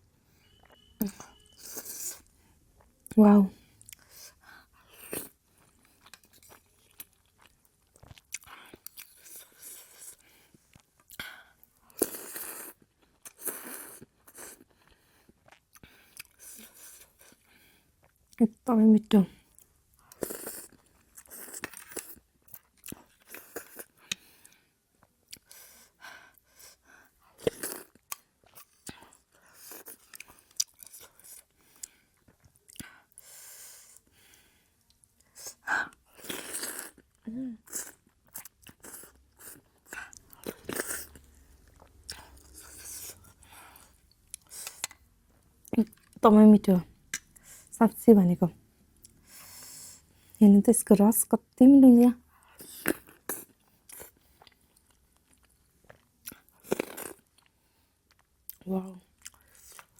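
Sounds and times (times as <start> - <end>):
chewing and biting food: 5.0 - 11.2, 52.4 - 59.9.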